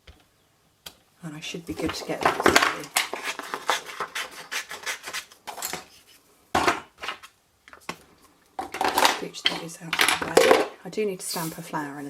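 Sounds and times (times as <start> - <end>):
card stock rustling scrapes: 1.9 - 6.3.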